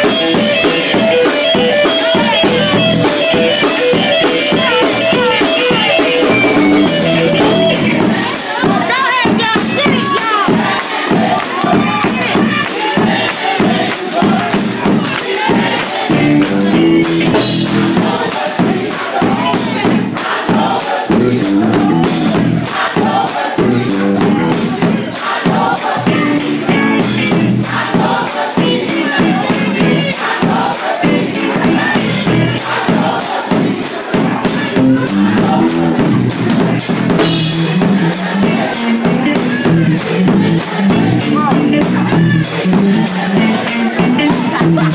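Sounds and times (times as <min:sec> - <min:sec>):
tambourine shaking: 0:00.0 - 0:07.8, 0:19.8 - 0:35.6, 0:36.4 - 0:44.9
steady beat: 0:00.0 - 0:44.9
voices singing gospel music: 0:00.0 - 0:44.9.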